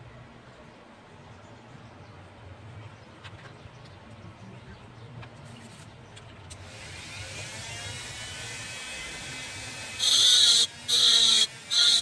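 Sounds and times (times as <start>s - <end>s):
small electric motor whirring: 6.6s - 12.0s.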